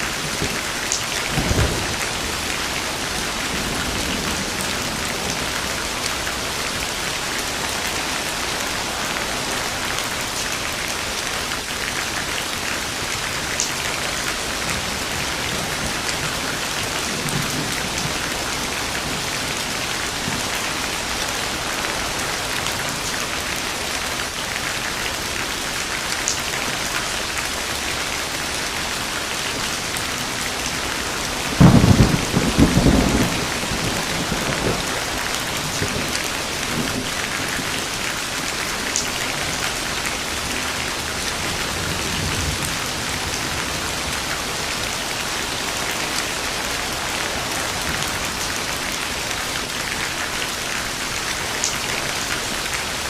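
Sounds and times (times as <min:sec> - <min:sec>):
steady rain falling: 0:00.0 - 0:53.0
booming thunderclap: 0:01.3 - 0:02.5, 0:31.4 - 0:37.7
thunder rolling: 0:01.3 - 0:05.9, 0:31.3 - 0:37.8.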